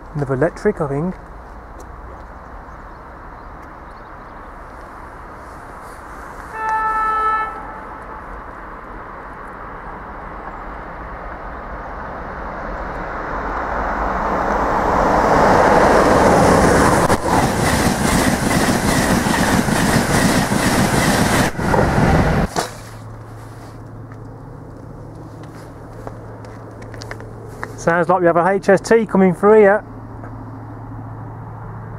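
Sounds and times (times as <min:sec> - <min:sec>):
train passing: 0:04.7 - 0:29.5
train horn blast: 0:06.5 - 0:08.3.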